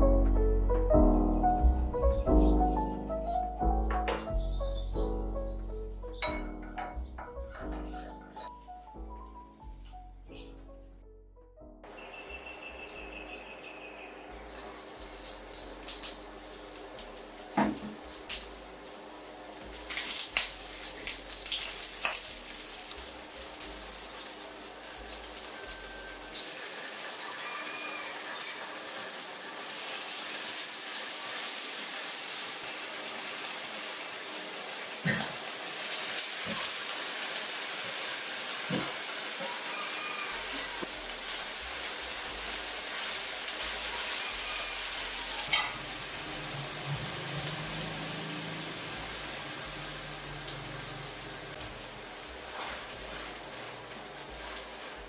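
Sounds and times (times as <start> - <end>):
food sizzling in oil: 14.4 - 55.0.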